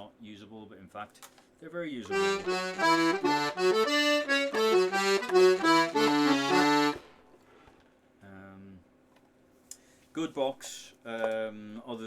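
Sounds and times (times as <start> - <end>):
button accordion playing a tune: 2.1 - 7.2.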